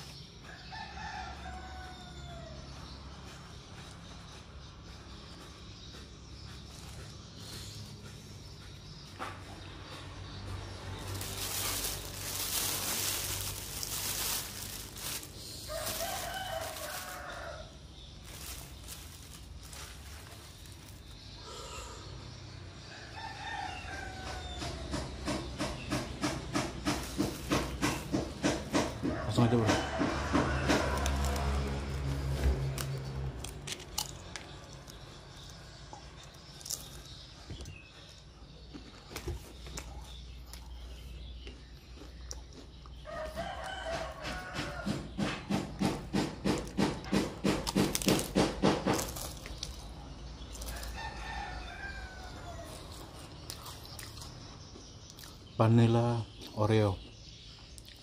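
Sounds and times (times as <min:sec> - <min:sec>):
rooster crowing: 0:00.4 - 0:02.8, 0:15.2 - 0:17.8, 0:22.8 - 0:24.8, 0:28.8 - 0:32.5, 0:43.1 - 0:45.1, 0:50.6 - 0:53.0
vehicle engine hum passing: 0:02.4 - 0:38.5
faint clicks and crunches: 0:11.0 - 0:21.2, 0:30.6 - 0:43.4.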